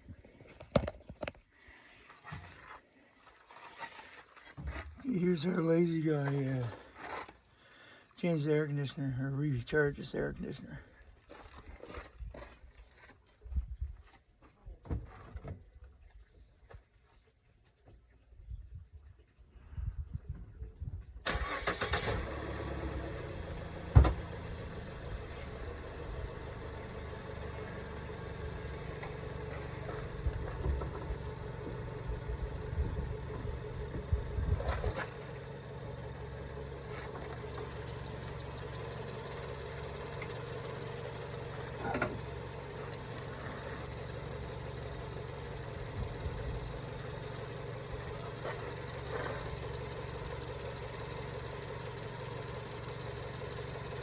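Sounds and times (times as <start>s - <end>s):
car engine idling: 21.3s - 54.0s.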